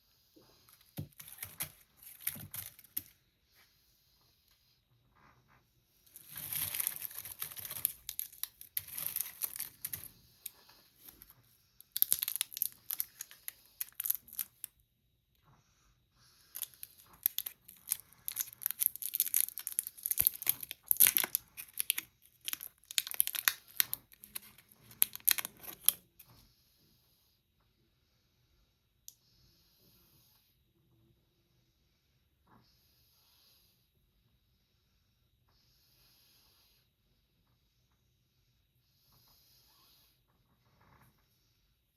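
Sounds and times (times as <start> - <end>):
candy wrappers crinkling: 0.7 - 3.1, 6.1 - 14.7, 16.5 - 26.1.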